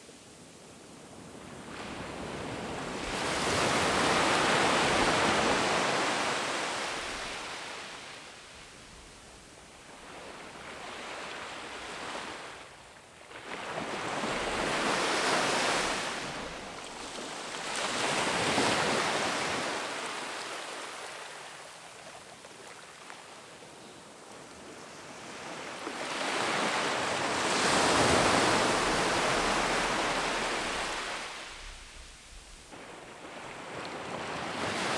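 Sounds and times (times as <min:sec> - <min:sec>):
ocean waves breaking on beach: 0:01.1 - 0:08.5, 0:13.3 - 0:21.8, 0:24.5 - 0:34.9.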